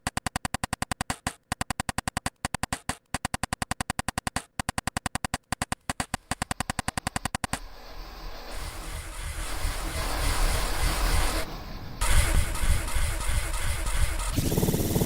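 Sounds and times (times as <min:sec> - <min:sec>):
looped stuttering skateboard ring: 0:08.4 - 0:15.0.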